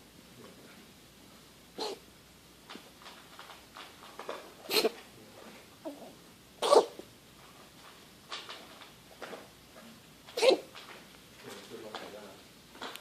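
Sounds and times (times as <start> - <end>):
animal coughing: 1.8 - 2.0, 4.7 - 5.0, 6.6 - 7.0, 10.4 - 10.7.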